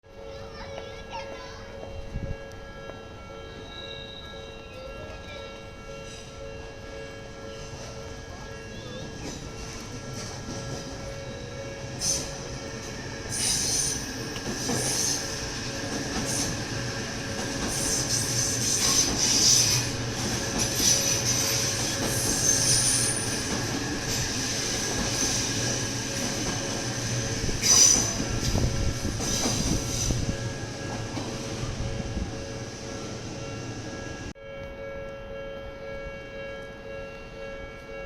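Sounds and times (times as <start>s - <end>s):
train rail rumble: 0.1s - 38.0s
train wheels squealing: 3.4s - 6.2s, 7.6s - 30.3s.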